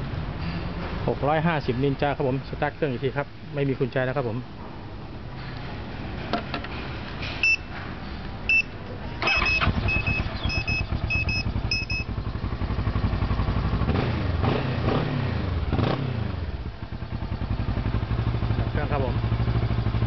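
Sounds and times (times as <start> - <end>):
motorcycle alarm beeps: 7.4 - 7.7, 8.5 - 12.2
motorcycle engine cranking and starting: 9.2 - 14.0
motorcycle engine idling and revving: 9.3 - 20.0.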